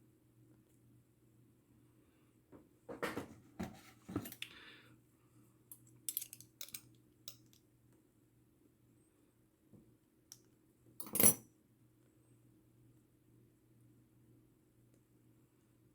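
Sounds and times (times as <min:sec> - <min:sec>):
small metal parts clinking: 0:06.1 - 0:07.6.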